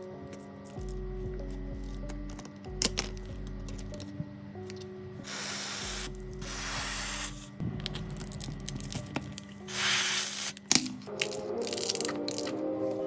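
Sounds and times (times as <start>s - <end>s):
background music: 0.0s - 13.0s
aerosol spray hissing: 5.2s - 7.6s, 9.7s - 10.6s.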